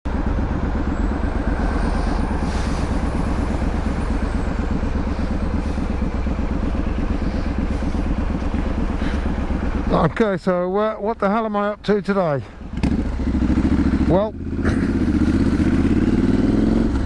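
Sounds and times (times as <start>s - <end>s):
motorcycle engine running: 0.1s - 17.0s.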